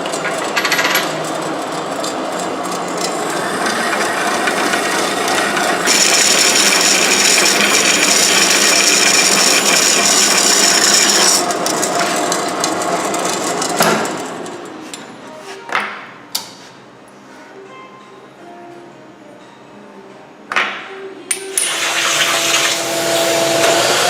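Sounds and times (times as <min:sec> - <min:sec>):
machine grinding metal: 0:00.0 - 0:14.8, 0:21.6 - 0:24.0.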